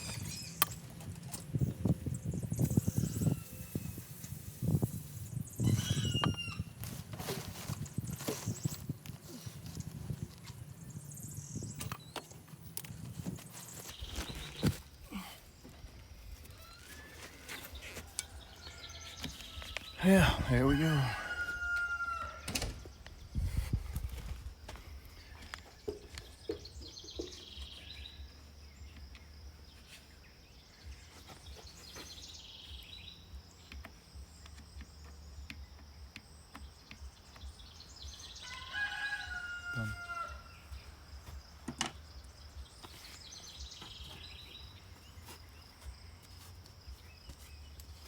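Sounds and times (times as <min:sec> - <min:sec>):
rooster crowing: 0:20.2 - 0:22.5, 0:38.4 - 0:40.6.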